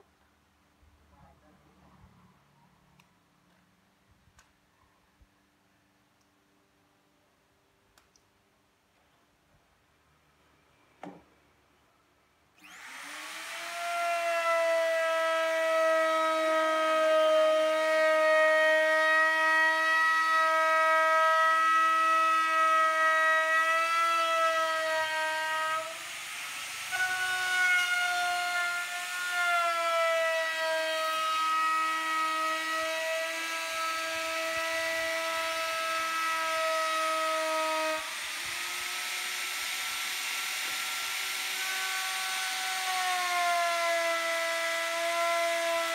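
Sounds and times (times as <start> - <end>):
power sander high whine: 12.6 - 16.0.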